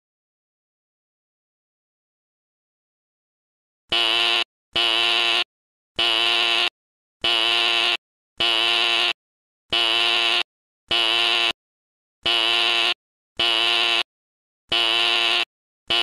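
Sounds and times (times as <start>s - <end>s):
fire alarm buzzing in pulses: 3.9s - 11.6s, 12.2s - 14.1s, 14.7s - 16.0s.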